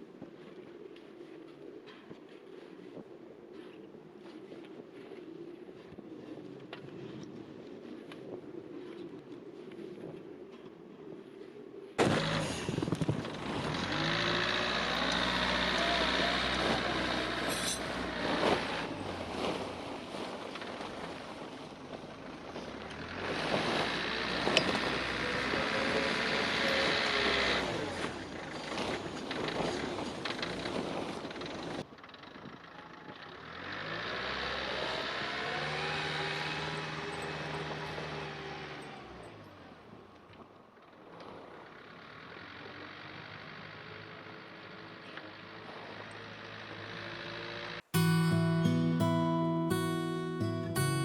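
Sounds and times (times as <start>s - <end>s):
vehicle engine running: 12.0s - 21.0s, 21.6s - 30.7s, 41.3s - 51.0s
road noise: 12.0s - 51.0s.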